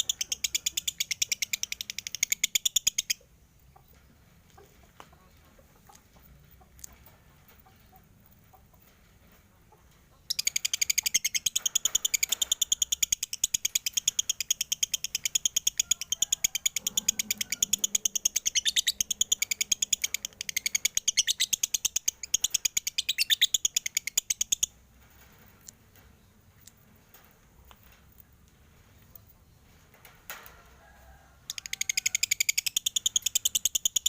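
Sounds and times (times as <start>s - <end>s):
lovebird chattering: 0.0s - 3.2s, 10.3s - 24.7s.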